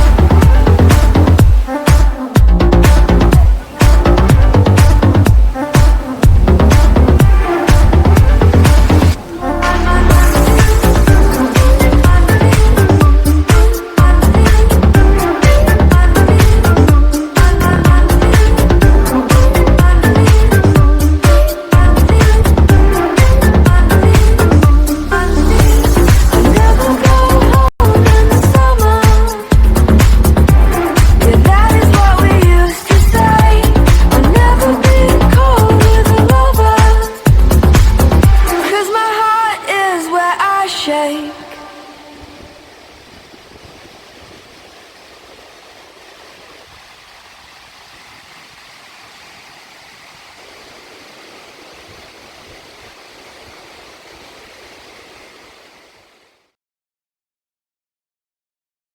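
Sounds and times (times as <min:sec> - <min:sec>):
waterfall rushing water: 0:00.0 - 0:27.6, 0:28.6 - 0:56.5
electronic dance music: 0:00.0 - 0:41.6.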